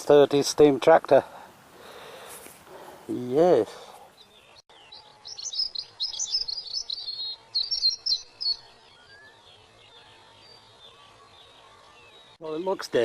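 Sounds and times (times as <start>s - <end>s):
songbird twittering: 4.1s - 12.8s.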